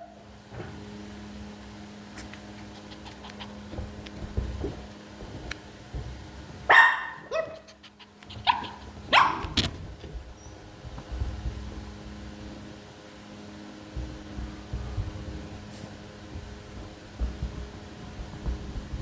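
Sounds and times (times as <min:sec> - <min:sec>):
steady low hum: 0:00.0 - 0:19.0
small dogs barking: 0:02.2 - 0:04.2, 0:06.7 - 0:09.9.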